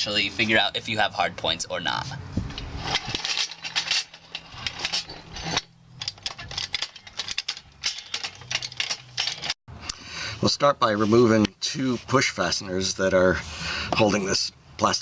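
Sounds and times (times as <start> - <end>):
small hard objects clinking: 2.8 - 9.6.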